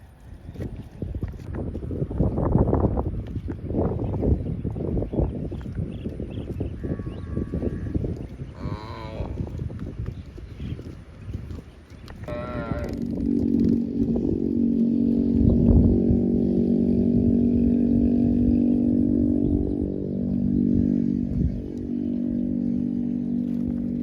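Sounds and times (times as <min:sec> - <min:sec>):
engine droning steadily: 0:12.3 - 0:24.0.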